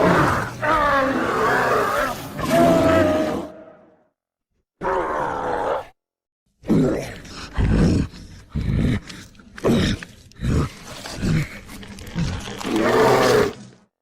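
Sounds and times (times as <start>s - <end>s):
creature grunts and groans: 0.0s - 3.6s, 6.6s - 13.6s
creature roar: 0.0s - 4.0s, 4.8s - 6.0s, 6.7s - 13.8s.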